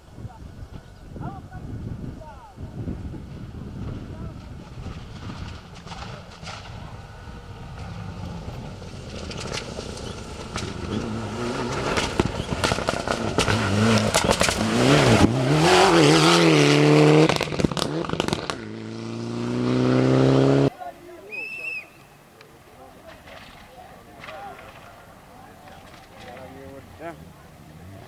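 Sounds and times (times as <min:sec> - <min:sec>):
exhaust crackling: 0:01.6 - 0:28.0
rally car engine at full throttle: 0:02.7 - 0:20.7, 0:25.8 - 0:28.0.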